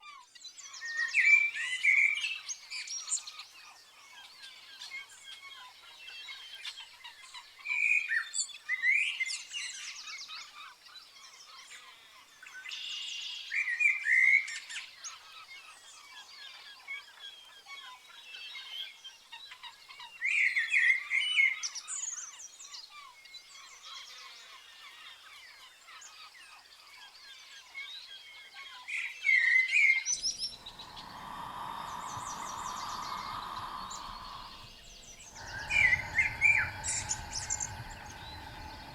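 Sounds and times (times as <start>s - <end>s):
songbirds chirping and singing: 27.9s - 38.9s.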